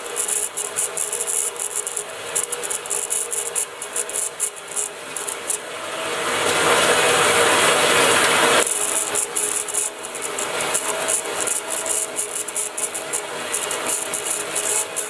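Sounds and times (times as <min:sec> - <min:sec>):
band saw cutting steel: 0:00.0 - 0:15.0.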